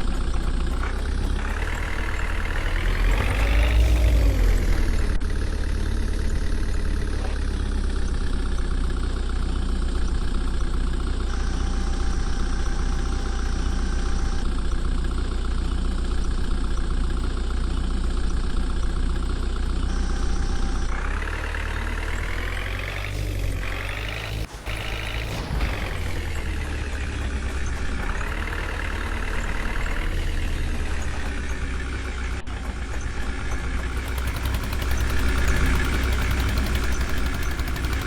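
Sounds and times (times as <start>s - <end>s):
heavy diesel engine rumbling: 0.0s - 38.0s.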